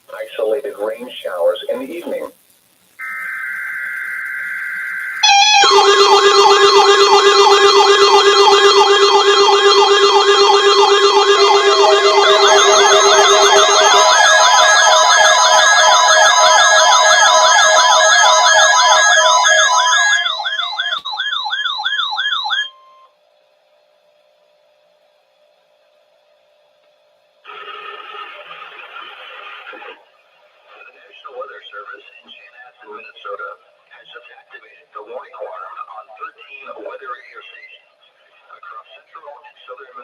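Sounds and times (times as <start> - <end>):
steady beeping tones: 3.0 - 21.0
buzzing data tone: 3.0 - 21.1
warbling alert sirens: 3.0 - 22.9.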